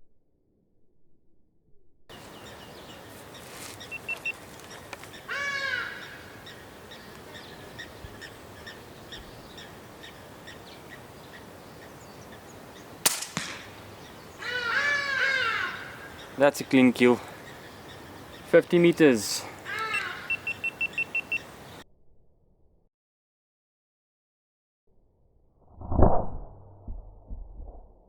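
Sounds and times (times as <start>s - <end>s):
birds calling: 2.1s - 21.8s
air rifle shot: 13.0s - 13.8s.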